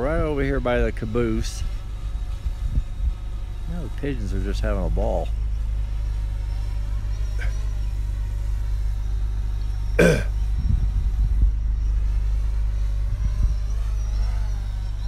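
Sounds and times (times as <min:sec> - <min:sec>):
steady low rumble: 0:00.0 - 0:15.0
throat sound: 0:10.0 - 0:10.3.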